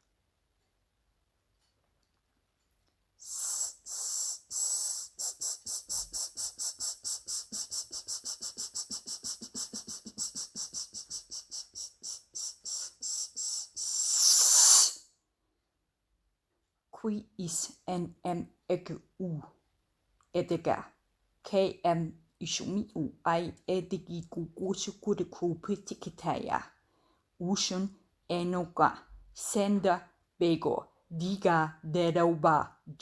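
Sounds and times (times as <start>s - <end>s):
woman hissing breaths: 3.2s - 15.0s.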